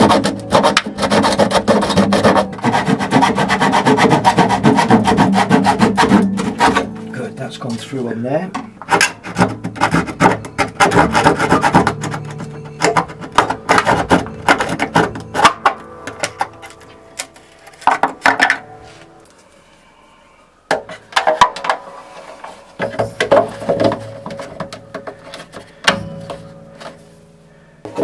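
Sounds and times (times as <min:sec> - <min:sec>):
guitar strings ringing: 0:06.0 - 0:09.2, 0:11.8 - 0:19.7, 0:21.0 - 0:28.0.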